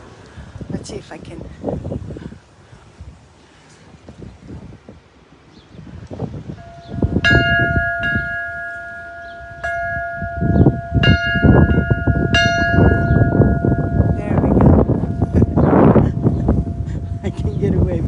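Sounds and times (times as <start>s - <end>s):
church bell clanging: 6.6s - 17.6s.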